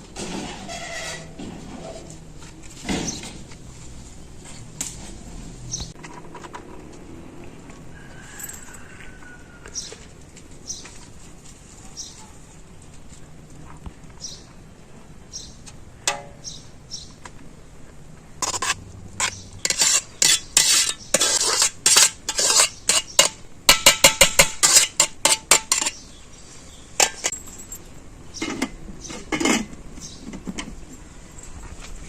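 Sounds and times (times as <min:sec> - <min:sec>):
metal utensils clinking on pots: 0:27.0 - 0:27.4.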